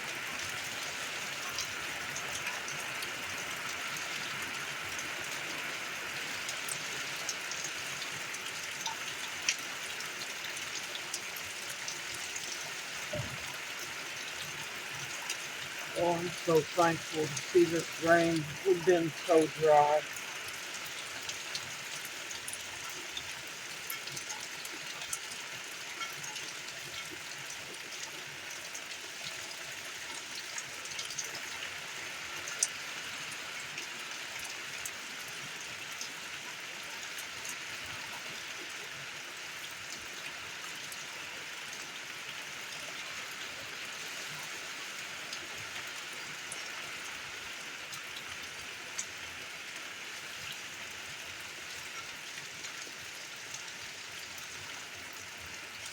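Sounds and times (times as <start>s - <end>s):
rain falling: 0.0s - 55.9s
water drips ticking: 6.4s - 31.6s, 32.4s - 32.8s.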